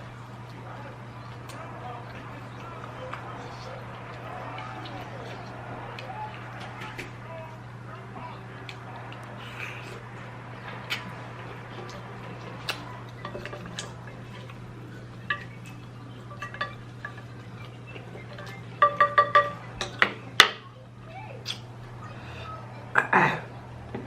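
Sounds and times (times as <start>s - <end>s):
steady low hum: 0.0s - 24.0s
tableware clinking: 11.0s - 20.6s.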